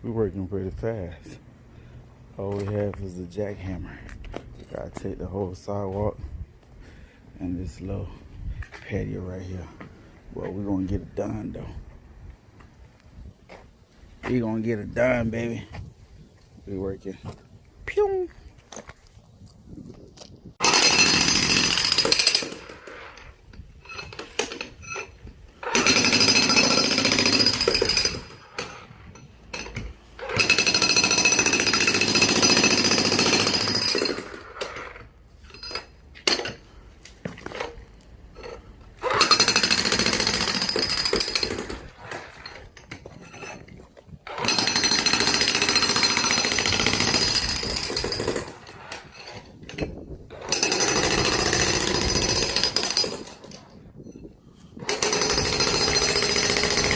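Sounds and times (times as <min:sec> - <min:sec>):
jackhammer breaking concrete: 0:20.6 - 0:23.2, 0:25.6 - 0:28.9, 0:30.2 - 0:34.9, 0:39.0 - 0:42.2, 0:44.3 - 0:49.0, 0:50.4 - 0:53.6, 0:54.8 - 0:56.9.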